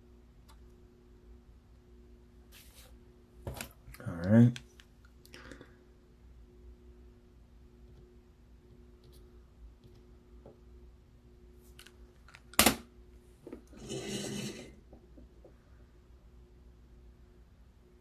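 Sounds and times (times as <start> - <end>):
faint steady hum: 0.0 - 18.0
rasping scrape: 13.7 - 14.8.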